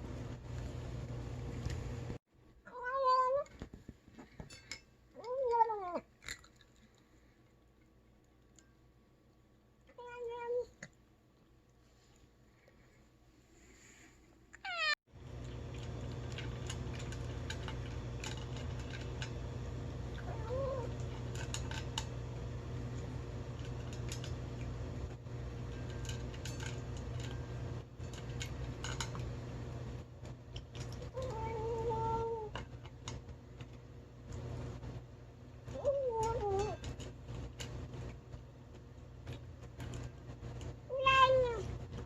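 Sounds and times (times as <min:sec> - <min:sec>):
cat chewing: 0:15.2 - 0:20.3.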